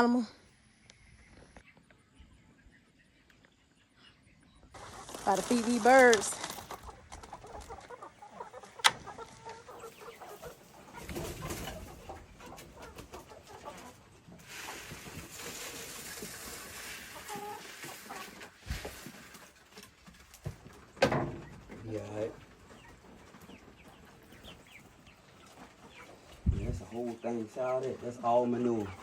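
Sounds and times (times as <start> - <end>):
chickens clucking: 1.3 - 29.0
rustling noise: 4.8 - 8.0, 9.0 - 20.8.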